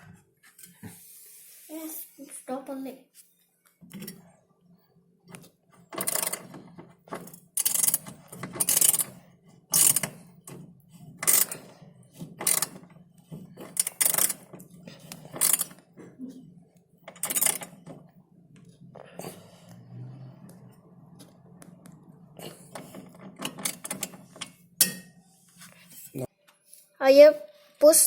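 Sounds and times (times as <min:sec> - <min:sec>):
ratchet wrench clicking: 0:06.0 - 0:06.4, 0:07.6 - 0:09.1, 0:09.7 - 0:10.2, 0:11.2 - 0:11.6, 0:12.4 - 0:12.8, 0:13.7 - 0:14.5, 0:15.1 - 0:15.8, 0:17.1 - 0:17.7.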